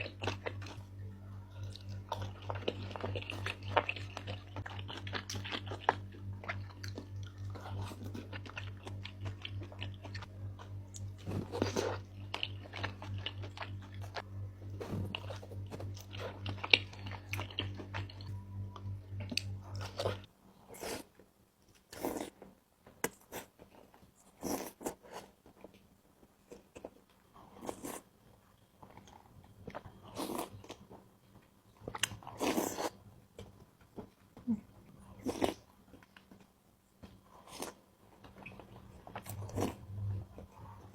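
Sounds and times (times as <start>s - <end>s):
chewing and wet mouth sounds: 0.0s - 14.2s, 15.1s - 18.3s, 28.8s - 40.9s
steady low hum: 0.0s - 20.6s.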